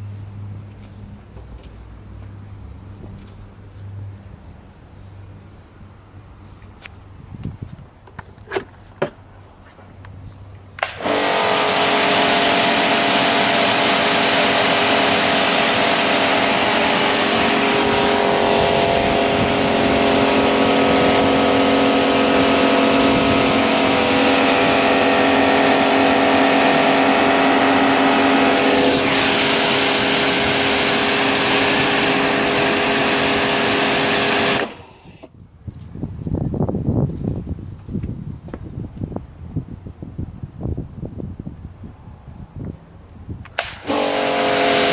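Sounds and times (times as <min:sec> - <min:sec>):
electric pressure washer running: 0:10.8 - 0:35.3, 0:43.6 - 0:44.9.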